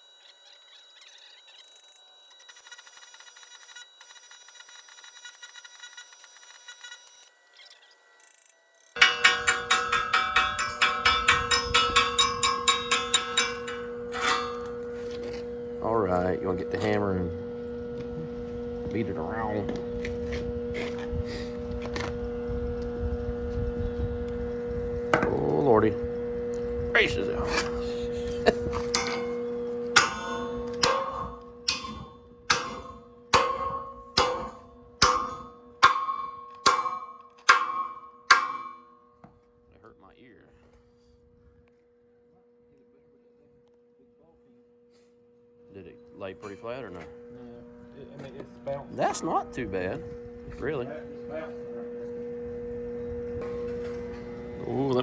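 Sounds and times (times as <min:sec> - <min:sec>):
hammer striking steel: 0:09.0 - 0:16.4, 0:25.2 - 0:25.6, 0:28.4 - 0:39.1
steady hum: 0:09.0 - 0:39.1, 0:45.4 - 0:55.0.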